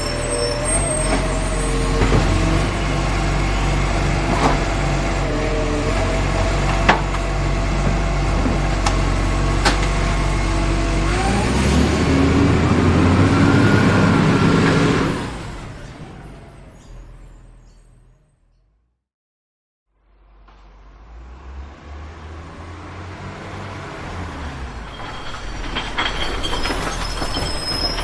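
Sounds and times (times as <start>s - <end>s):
heavy truck engine revving: 0.0s - 17.7s, 20.7s - 25.0s.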